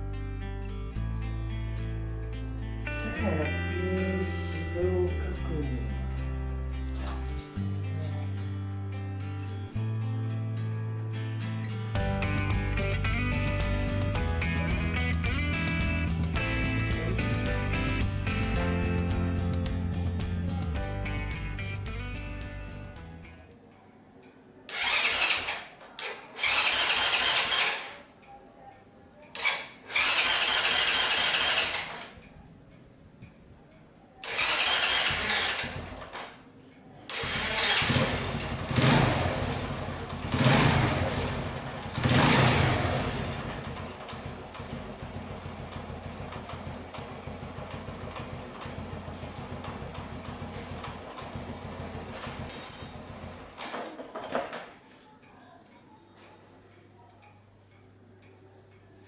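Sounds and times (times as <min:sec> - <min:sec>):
motorcycle engine being cranked: 0:24.7 - 0:28.0, 0:29.4 - 0:32.2, 0:34.2 - 0:36.4, 0:37.1 - 0:53.8.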